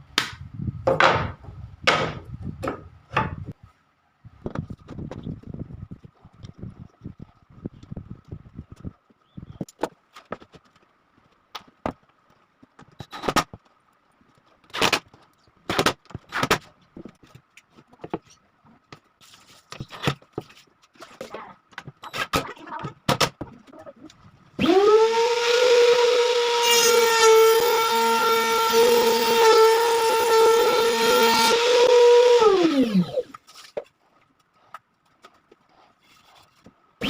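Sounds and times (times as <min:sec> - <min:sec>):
electric power tool motor: 0:24.6 - 0:33.3.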